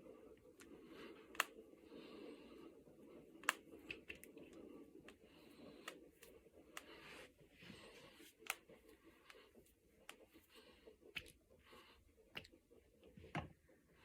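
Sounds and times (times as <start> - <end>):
knuckles cracking: 0.6 - 1.6, 3.4 - 7.0, 8.3 - 10.4.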